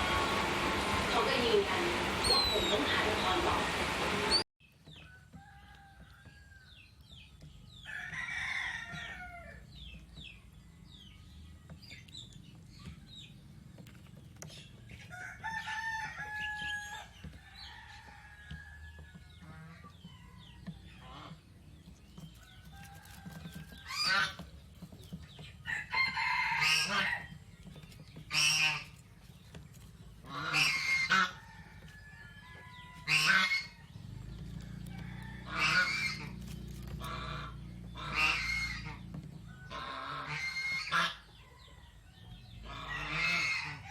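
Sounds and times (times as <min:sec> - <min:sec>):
birds chirping: 0:00.0 - 0:05.1, 0:06.4 - 0:43.9
longer bird calls: 0:01.4 - 0:03.6.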